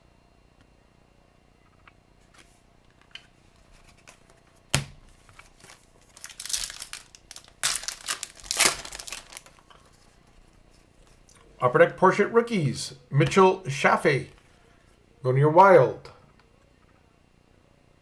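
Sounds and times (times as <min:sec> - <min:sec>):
foil wrapper crinkling and tearing: 0:05.1 - 0:10.1.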